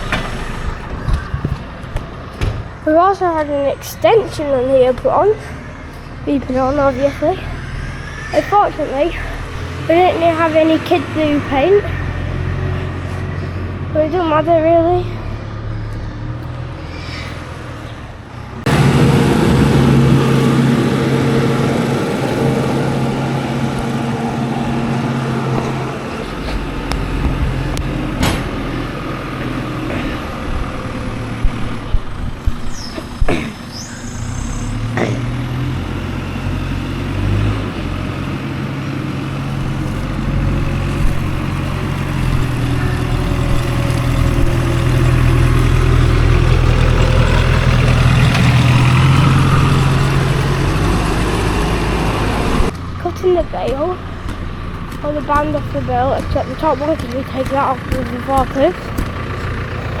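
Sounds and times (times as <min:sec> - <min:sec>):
sharp knocks: 0:00.0 - 0:02.8, 0:26.6 - 0:28.7
forklift engine running: 0:00.0 - 1:00.0.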